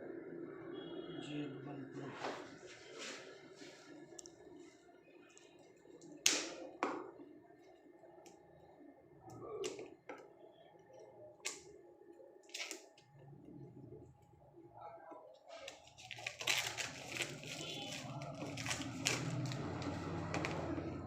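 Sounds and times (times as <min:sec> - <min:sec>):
packaging crackling and snapping: 0:12.4 - 0:13.1, 0:15.5 - 0:20.8.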